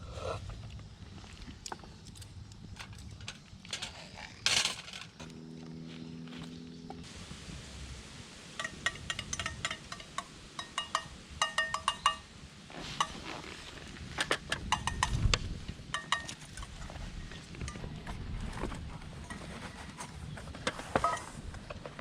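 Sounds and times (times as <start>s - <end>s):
low rumble of handling: 0.0s - 8.0s, 12.9s - 22.0s
dishes clinking: 8.6s - 12.3s, 15.9s - 18.0s, 20.9s - 21.4s.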